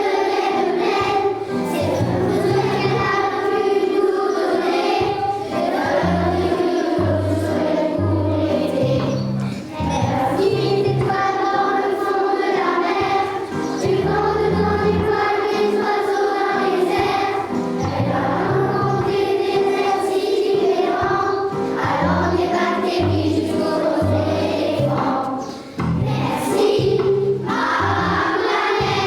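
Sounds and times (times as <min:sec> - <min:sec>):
choir singing held notes: 0:00.0 - 0:29.0
low accompaniment: 0:00.1 - 0:29.0.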